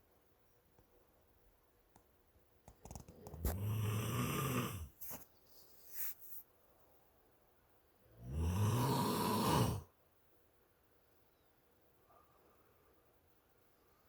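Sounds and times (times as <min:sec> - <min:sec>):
low buzzing snores: 0:03.4 - 0:04.9, 0:08.1 - 0:09.9.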